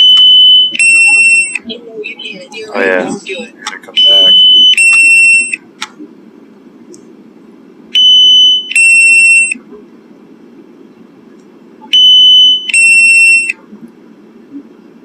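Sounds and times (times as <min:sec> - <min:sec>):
two-tone alarm beeps: 0:00.0 - 0:01.6, 0:04.0 - 0:05.6, 0:08.0 - 0:09.6, 0:11.9 - 0:13.6.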